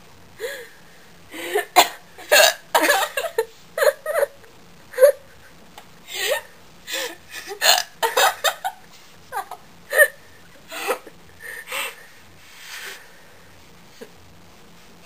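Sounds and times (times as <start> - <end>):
laughter: 2.8 - 4.4.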